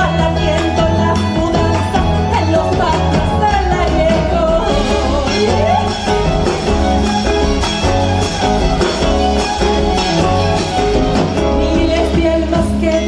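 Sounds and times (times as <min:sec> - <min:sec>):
person singing: 0:00.0 - 0:07.5, 0:11.1 - 0:13.0
guitar: 0:00.0 - 0:13.0.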